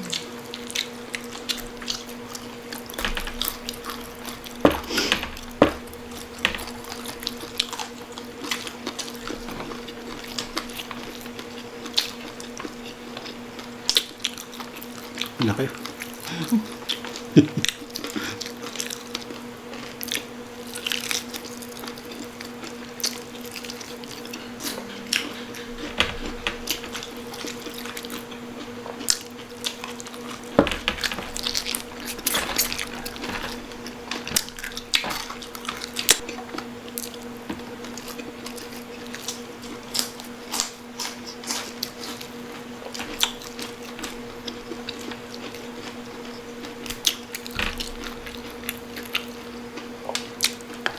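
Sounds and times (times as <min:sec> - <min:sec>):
wet chewing and lip-smacking: 0:00.0 - 0:04.6
steady low hum: 0:00.0 - 0:50.9.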